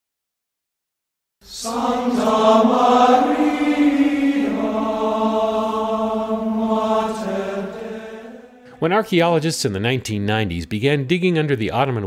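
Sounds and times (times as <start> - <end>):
chanted singing on held notes: 1.4 - 8.8.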